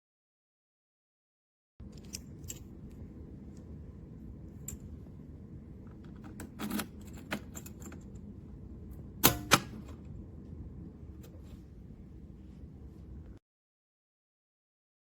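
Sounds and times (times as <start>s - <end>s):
metal safe click: 9.2s - 10.0s.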